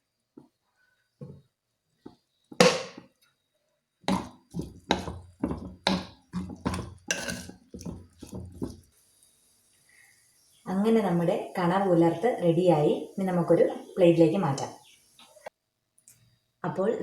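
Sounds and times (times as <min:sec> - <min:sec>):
spatula scraping a pan: 0:04.1 - 0:08.9.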